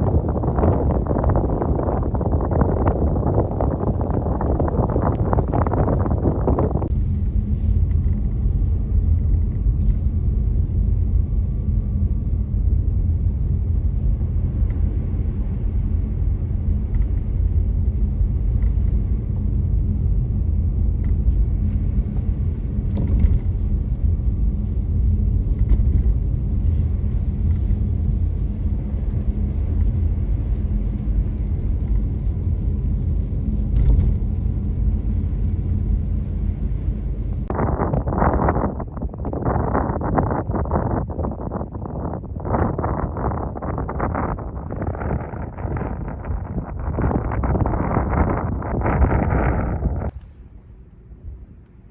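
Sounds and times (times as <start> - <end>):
car engine and tyre rumble: 0.0 - 51.9.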